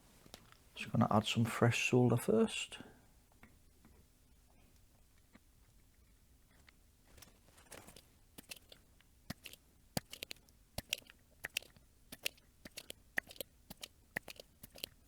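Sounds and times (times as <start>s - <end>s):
tools clicking on circuit board: 9.3s - 15.0s.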